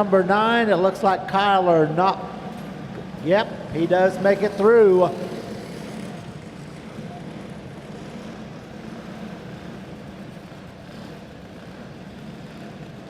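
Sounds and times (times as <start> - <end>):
small kart engines droning: 0.0 - 13.0.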